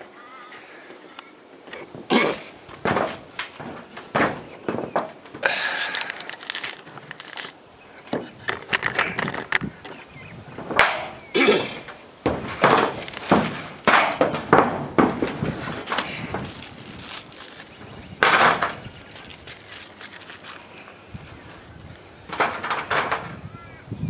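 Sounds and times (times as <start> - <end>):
scraping or rustling: 1.8 - 23.4
knocks and clatters: 2.7 - 10.0, 11.8 - 20.6, 22.3 - 23.4.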